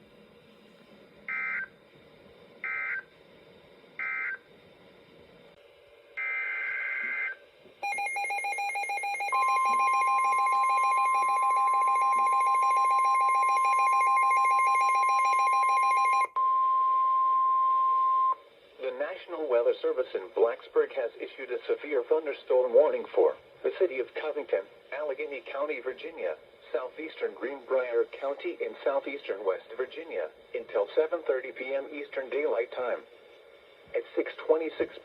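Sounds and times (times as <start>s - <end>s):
harsh buzzing alarm: 1.3s - 1.7s, 2.6s - 3.1s, 4.0s - 4.4s, 6.2s - 16.4s.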